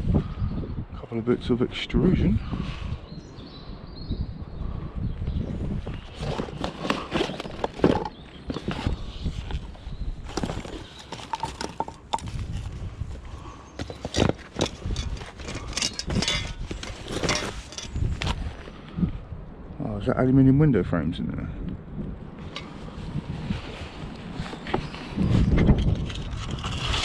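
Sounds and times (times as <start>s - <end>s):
scrap metal clanking: 6.2s - 9.0s, 10.3s - 12.3s, 13.8s - 18.0s.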